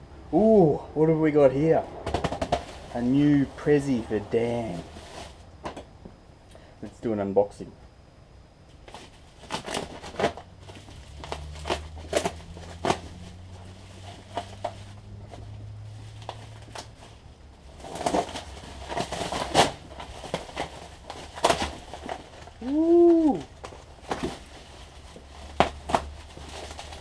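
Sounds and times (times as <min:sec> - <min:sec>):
low steady hum: 0:00.0 - 0:27.0
packaging crinkling and tearing: 0:08.8 - 0:27.0.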